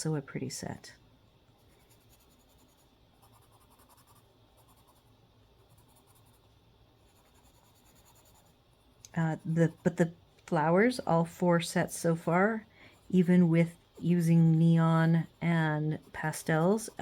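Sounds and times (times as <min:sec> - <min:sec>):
colored pencil scratching on paper: 0:01.6 - 0:10.1, 0:12.0 - 0:17.0.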